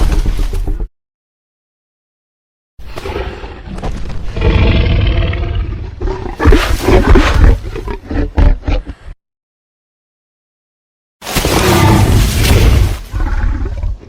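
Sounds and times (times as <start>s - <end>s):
dinosaur roar: 3.0s - 9.2s.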